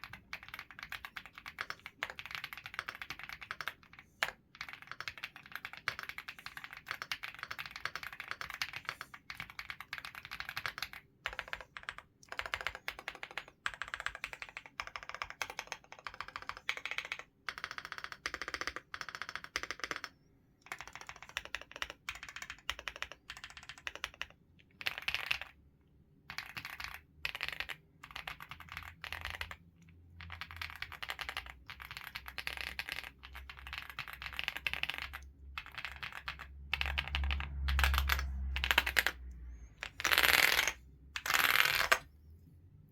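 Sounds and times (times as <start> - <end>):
typing on mechanical keyboard: 0.0 - 42.1.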